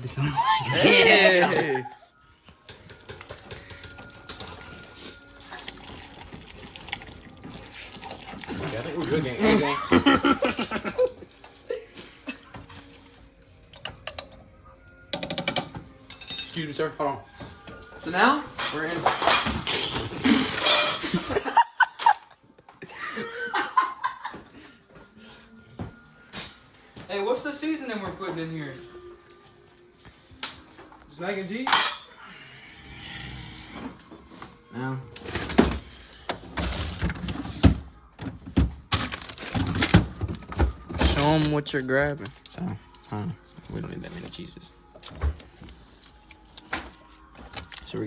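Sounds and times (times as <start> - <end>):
people laughing: 0.2 - 2.1, 9.4 - 12.6, 21.0 - 24.8.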